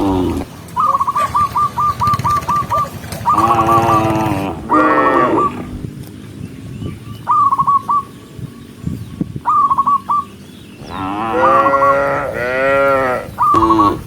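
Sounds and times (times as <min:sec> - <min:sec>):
cow mooing: 0:00.0 - 0:00.5, 0:03.3 - 0:05.7, 0:10.8 - 0:14.0.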